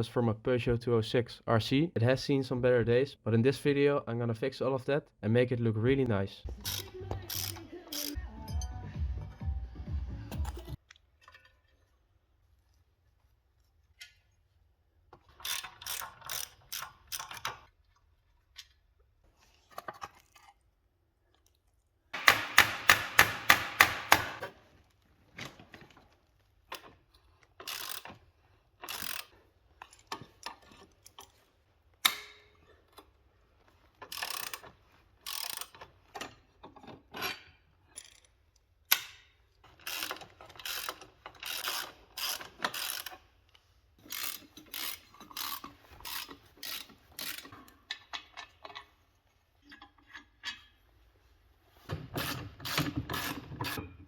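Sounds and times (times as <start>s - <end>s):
socket ratchet clicking: 6.6s - 8.2s, 15.4s - 17.5s, 22.2s - 24.5s, 27.6s - 28.1s, 28.9s - 29.3s, 34.1s - 34.7s, 35.3s - 35.8s, 39.8s - 43.2s, 44.0s - 47.6s.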